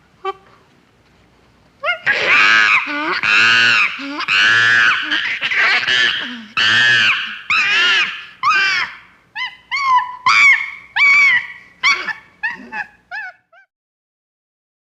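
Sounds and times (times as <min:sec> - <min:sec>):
chimpanzee screeching: 0:01.8 - 0:13.7.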